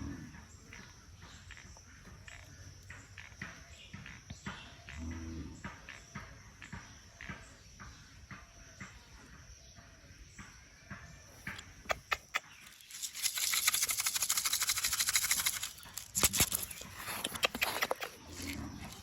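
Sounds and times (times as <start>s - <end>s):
clicks and rustles: 11.5s - 19.0s
bird wings fluttering: 11.8s - 19.0s.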